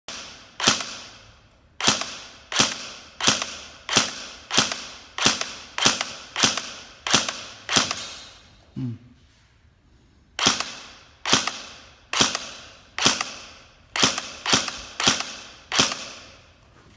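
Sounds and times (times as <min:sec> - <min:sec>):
airsoft gun single shots: 0:00.1 - 0:01.2, 0:01.8 - 0:08.2, 0:10.4 - 0:16.3.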